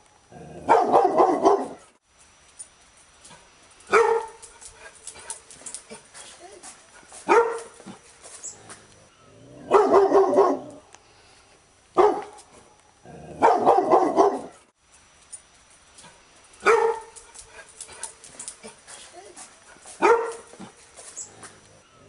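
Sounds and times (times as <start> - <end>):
dog barking: 0.6 - 1.9, 3.9 - 4.4, 7.2 - 8.0, 9.6 - 10.8, 12.0 - 12.4, 13.4 - 14.6, 16.6 - 17.2, 17.9 - 20.7.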